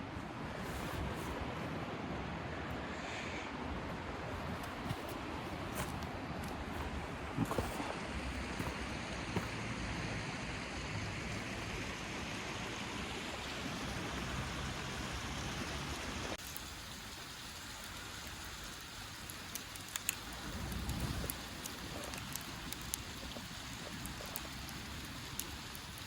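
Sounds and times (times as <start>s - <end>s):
wood fire hissing: 0.1s - 26.0s
fire crackles: 16.4s - 26.0s.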